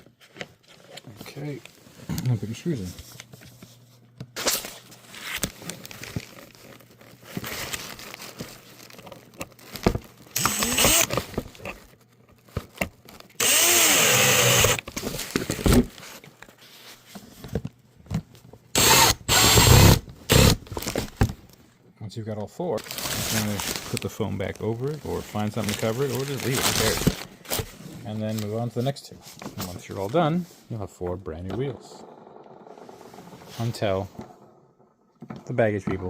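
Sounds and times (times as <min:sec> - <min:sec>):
cordless drill driving screws: 0:10.4 - 0:11.2, 0:13.4 - 0:14.9, 0:18.8 - 0:20.6.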